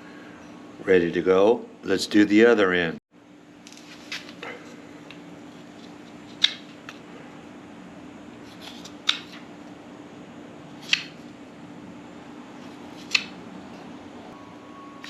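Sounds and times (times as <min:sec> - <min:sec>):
knife cutting wood: 0:08.5 - 0:09.4, 0:10.8 - 0:11.2, 0:12.7 - 0:13.4.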